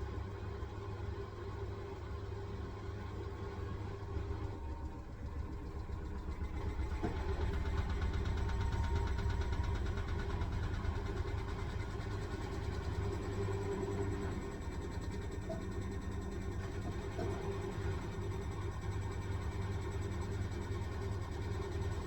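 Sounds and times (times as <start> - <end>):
washing machine motor hum: 0.2 - 22.0.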